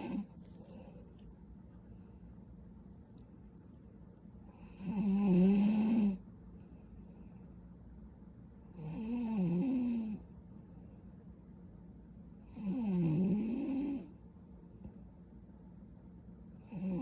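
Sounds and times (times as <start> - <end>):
woman snoring: 0.0 - 0.3, 4.7 - 6.2, 8.8 - 10.2, 12.5 - 14.1, 16.7 - 17.0.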